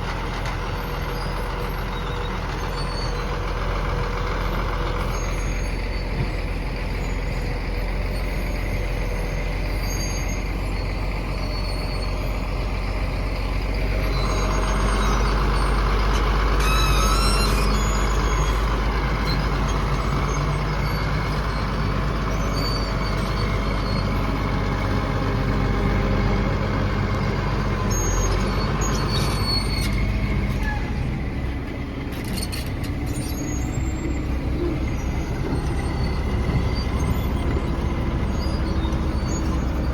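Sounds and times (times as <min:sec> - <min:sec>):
heavy machine engine rumbling: 0:00.0 - 0:39.9.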